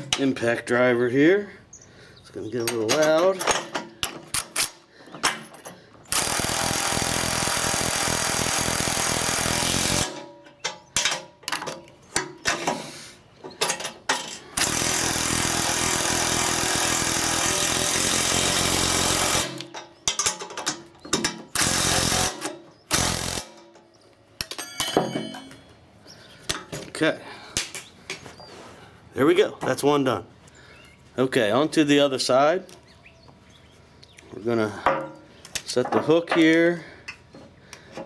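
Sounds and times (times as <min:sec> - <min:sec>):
impact driver hammering: 0:06.1 - 0:10.4, 0:14.6 - 0:20.4, 0:21.1 - 0:23.7.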